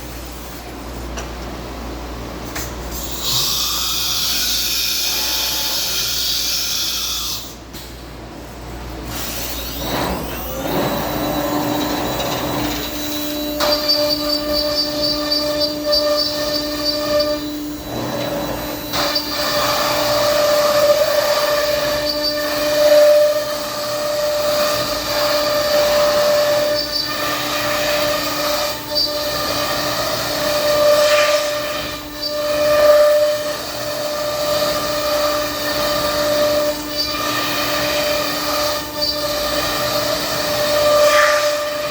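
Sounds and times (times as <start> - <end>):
machine working noise: 0.0 - 41.9
router spindle whine: 9.6 - 41.9.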